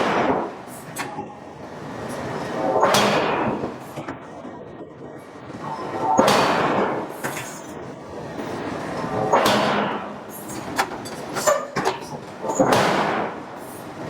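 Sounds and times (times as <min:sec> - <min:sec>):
forging hammer striking steel: 0:09.3 - 0:11.8.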